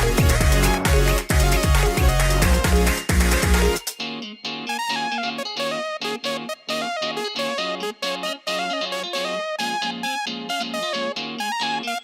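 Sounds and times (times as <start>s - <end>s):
heavier electronic track: 0.0s - 3.8s
repeating bass pattern: 0.0s - 3.8s
plucked guitar-like melody: 0.0s - 12.0s.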